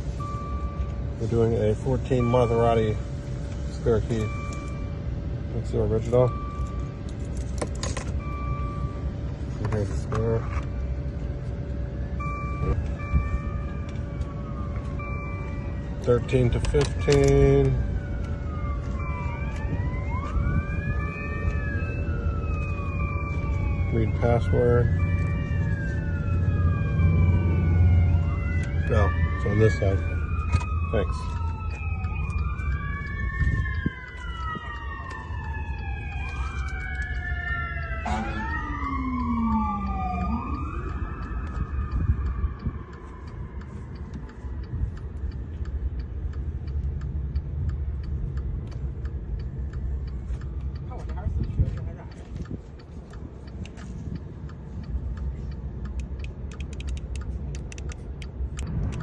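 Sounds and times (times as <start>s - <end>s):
emergency sirens wailing: 0.0s - 59.0s
low steady rumble: 0.0s - 59.0s
rapid light clicks: 55.8s - 59.0s
low rumble: 58.2s - 59.0s.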